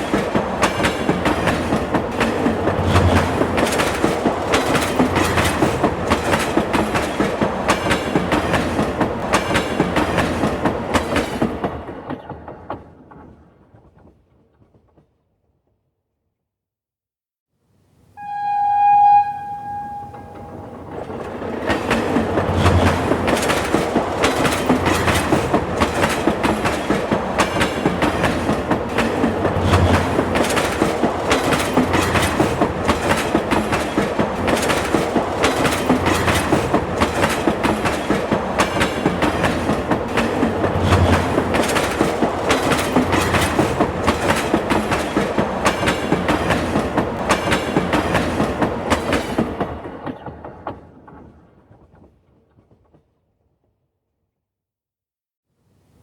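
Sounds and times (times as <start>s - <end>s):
wheels clacking over rail joints: 0.0s - 14.1s, 20.0s - 53.0s
train horn: 18.2s - 21.0s.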